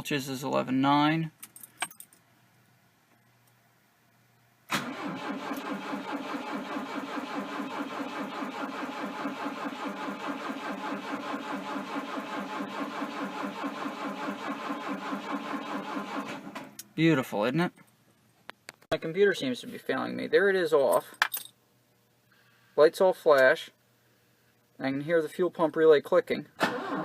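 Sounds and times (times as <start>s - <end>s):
starter cranking car engine: 4.7s - 16.6s, 26.6s - 27.0s.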